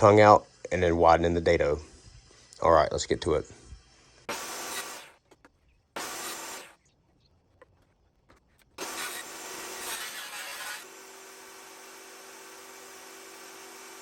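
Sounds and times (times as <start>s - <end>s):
table saw running: 4.3s - 5.2s, 6.0s - 6.7s, 8.8s - 14.0s.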